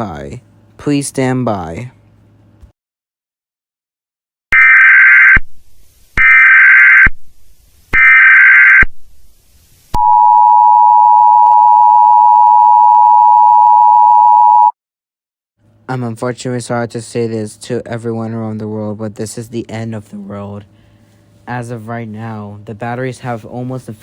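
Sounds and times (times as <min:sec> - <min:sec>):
two-tone attention signal: 0:10.0 - 0:14.7.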